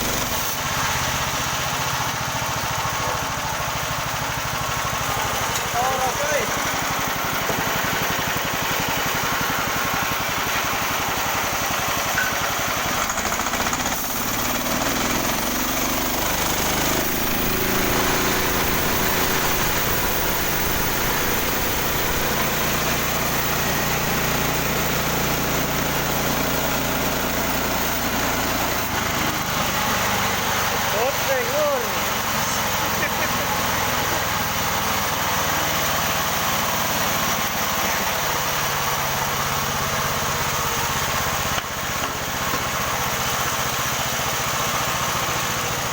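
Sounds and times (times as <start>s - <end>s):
sawmill engine running: 0.0s - 45.9s.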